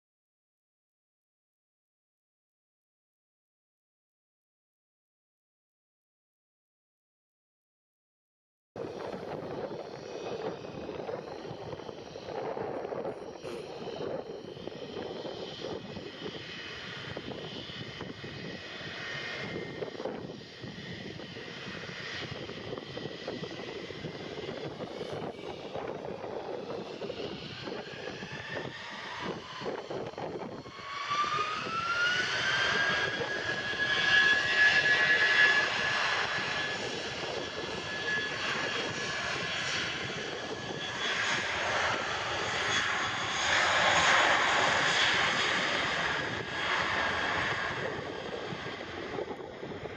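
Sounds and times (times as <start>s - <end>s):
jet engines spooling up: 8.8s - 49.9s.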